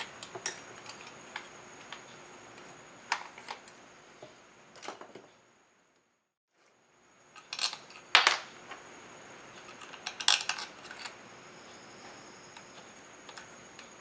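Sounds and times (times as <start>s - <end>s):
small metal parts clinking: 7.4s - 8.5s, 9.7s - 11.2s.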